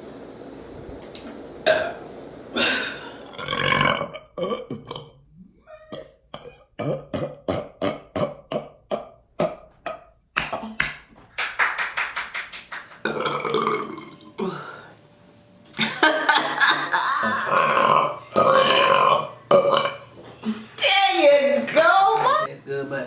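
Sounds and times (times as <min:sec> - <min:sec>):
woman burping: 0:02.6 - 0:05.2, 0:05.9 - 0:10.8, 0:13.1 - 0:14.6, 0:16.7 - 0:20.7.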